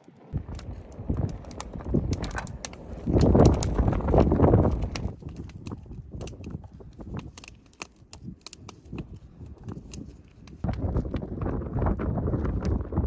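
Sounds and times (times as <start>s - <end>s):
low rumble: 0.3s - 7.0s
dense rustling noise: 0.3s - 13.0s.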